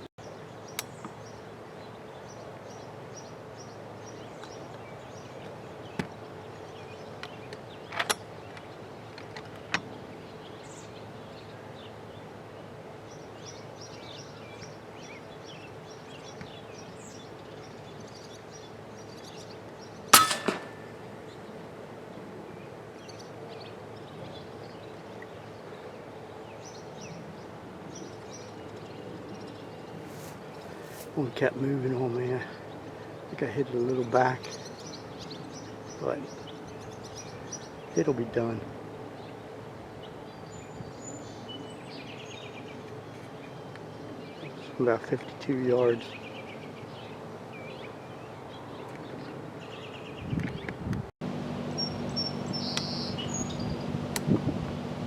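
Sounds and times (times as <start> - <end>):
air rifle firing crack: 20.2 - 21.0
faint high bird chirps: 51.8 - 53.8.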